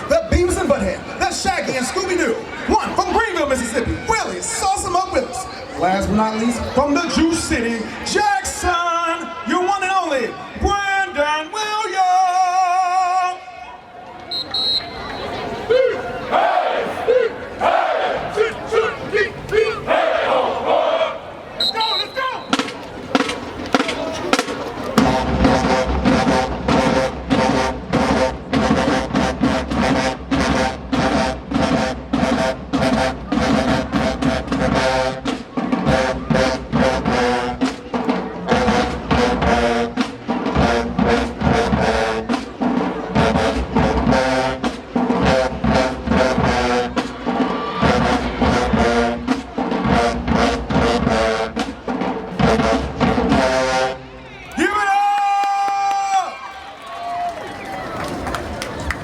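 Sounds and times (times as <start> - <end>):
marching band brass: 14.2 - 59.0
drum line: 21.8 - 54.0.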